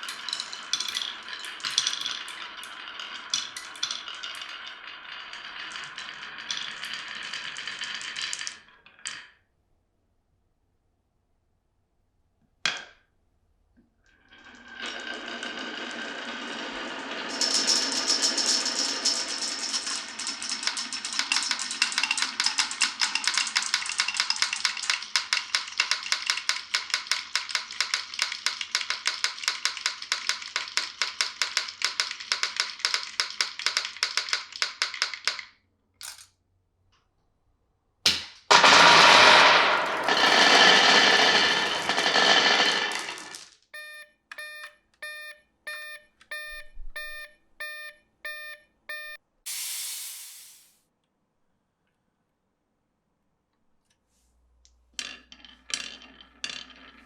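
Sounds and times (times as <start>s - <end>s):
marbles clattering down wooden run: 0.0s - 9.3s, 14.3s - 35.5s, 38.5s - 43.6s, 55.0s - 57.0s.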